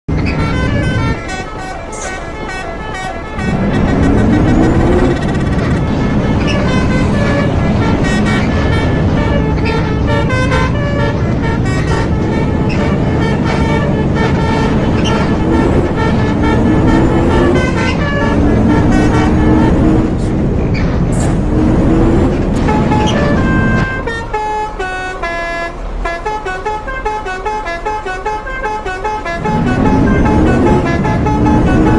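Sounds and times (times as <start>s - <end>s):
musical air horn toots: 0.1s - 20.3s, 22.6s - 31.9s
engine rumble: 0.1s - 31.9s.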